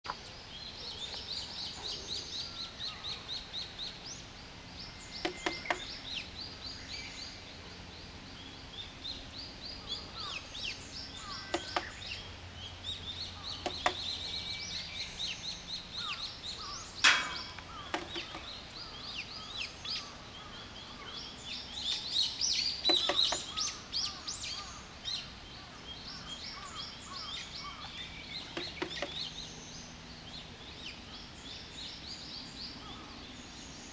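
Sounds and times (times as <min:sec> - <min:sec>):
wild birds chirping: 0:00.0 - 0:33.9
sharp knocks: 0:05.2 - 0:05.9, 0:11.5 - 0:11.9, 0:17.0 - 0:18.6, 0:22.8 - 0:23.6.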